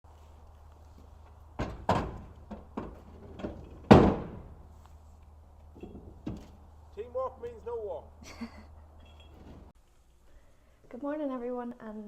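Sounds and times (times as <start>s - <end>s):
knocks and clunks: 1.3s - 4.7s, 5.7s - 6.6s, 9.0s - 9.7s
door slamming shut: 1.6s - 4.6s.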